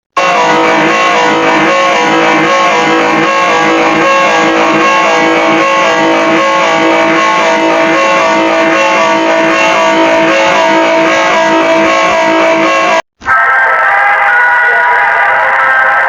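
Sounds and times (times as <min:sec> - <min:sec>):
plucked guitar music: 0:00.2 - 0:13.0.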